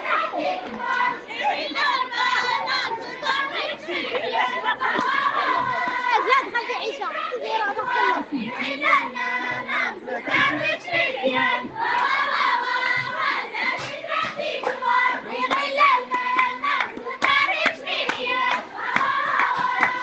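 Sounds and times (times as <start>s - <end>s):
people singing together: 0.0s - 20.0s
hand clapping: 4.9s - 5.2s, 13.6s - 20.0s.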